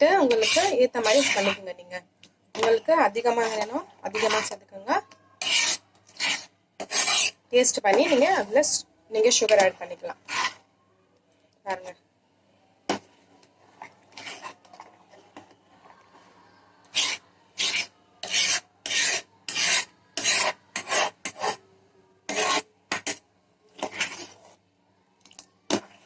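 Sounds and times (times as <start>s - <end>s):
spoon scraping a cooking pan: 0.0s - 1.9s, 2.5s - 10.6s, 12.9s - 15.5s, 16.8s - 21.6s, 22.3s - 23.2s, 23.8s - 24.6s.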